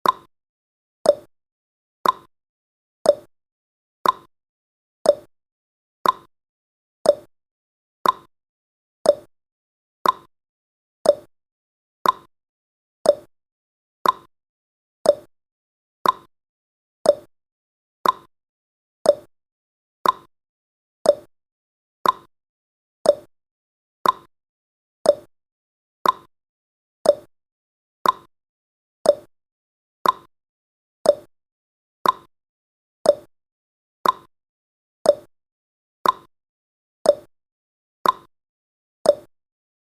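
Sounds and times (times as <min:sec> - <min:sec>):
clock ticking: 0:02.0 - 0:02.3, 0:06.0 - 0:06.3, 0:08.0 - 0:08.3, 0:10.0 - 0:10.3, 0:12.0 - 0:12.3, 0:14.0 - 0:14.3, 0:15.1 - 0:15.3, 0:16.0 - 0:16.3, 0:18.0 - 0:18.3, 0:20.0 - 0:20.3, 0:21.1 - 0:21.3, 0:22.0 - 0:22.3, 0:24.0 - 0:24.3, 0:25.1 - 0:25.3, 0:26.0 - 0:26.3, 0:27.1 - 0:27.3, 0:28.0 - 0:28.3, 0:29.1 - 0:29.3, 0:30.0 - 0:30.3, 0:32.0 - 0:32.3, 0:33.1 - 0:33.3, 0:34.0 - 0:34.3, 0:36.0 - 0:36.3, 0:38.0 - 0:38.3, 0:39.1 - 0:39.3.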